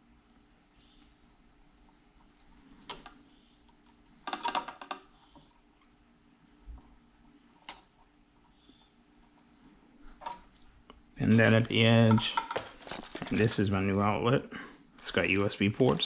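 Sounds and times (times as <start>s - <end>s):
tools and wire clicking and rattling: 11.4s - 13.5s.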